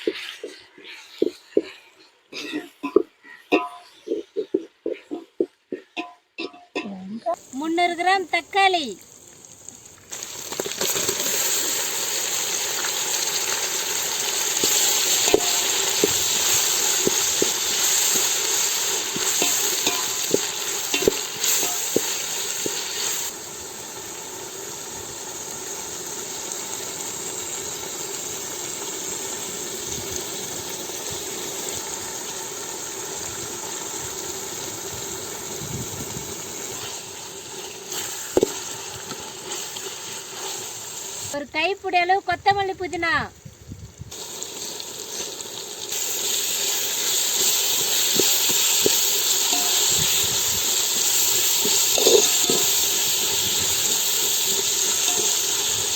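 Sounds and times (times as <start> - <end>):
ladle knocking against pot: 2.6 - 6.9
food sizzling in oil: 5.8 - 55.9.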